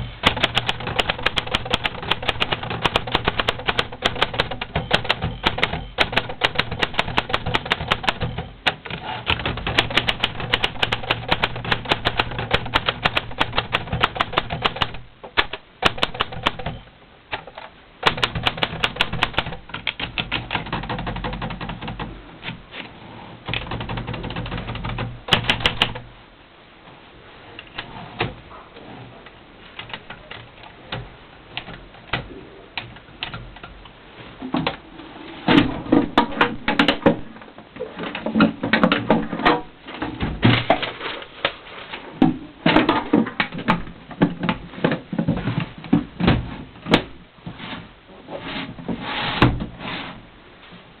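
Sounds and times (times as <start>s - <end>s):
low steady hum: 0.0s - 51.0s
typewriter key strikes: 0.2s - 16.8s, 18.0s - 21.7s.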